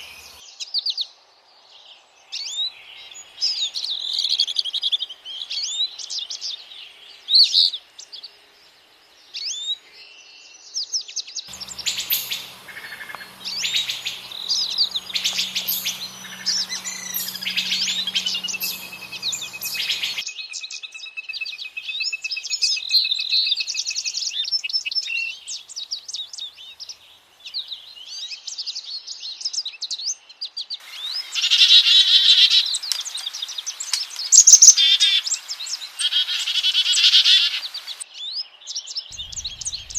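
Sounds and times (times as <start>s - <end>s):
background hiss: 0.0s - 0.4s, 11.5s - 20.2s, 30.8s - 38.0s, 39.1s - 39.9s
bird trilling: 11.5s - 20.2s, 39.1s - 39.9s
songbirds chirping and whistling: 11.5s - 20.6s, 32.2s - 39.9s.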